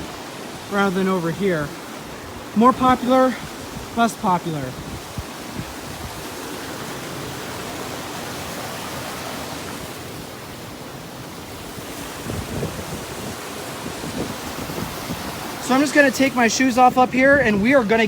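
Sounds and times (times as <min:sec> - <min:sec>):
waterfall and rapids rushing: 0:00.0 - 0:18.0.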